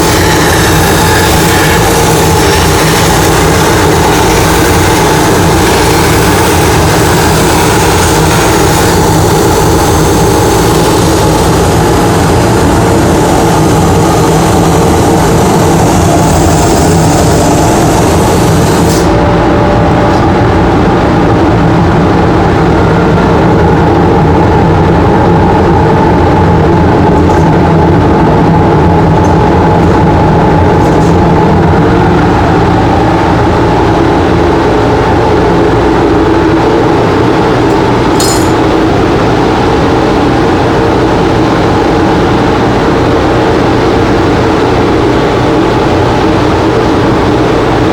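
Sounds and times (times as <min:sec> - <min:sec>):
plasma torch cutting sheet metal: 0:00.0 - 0:19.1
extractor fans running: 0:00.0 - 0:47.9.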